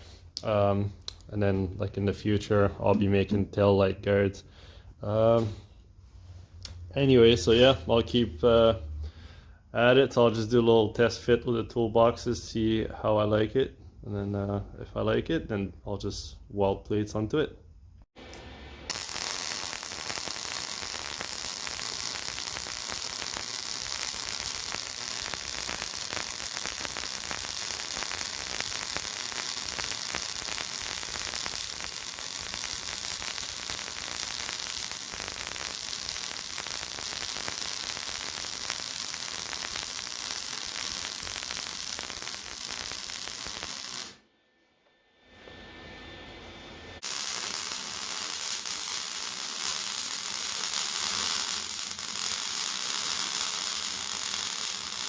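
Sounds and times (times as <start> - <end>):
welding arc crackling hiss: 18.2 - 44.2, 47.0 - 55.0.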